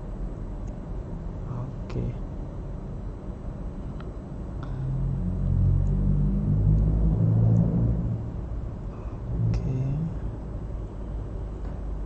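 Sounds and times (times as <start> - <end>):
low engine rumble: 0.0 - 12.0.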